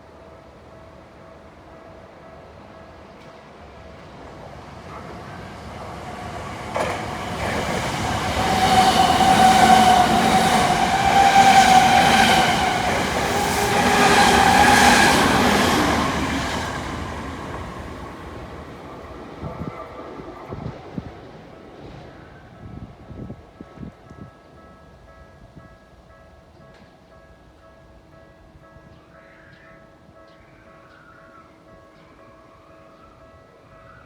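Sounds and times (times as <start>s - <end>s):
electric train passing: 1.0s - 23.4s
train wheel clatter: 5.8s - 21.0s.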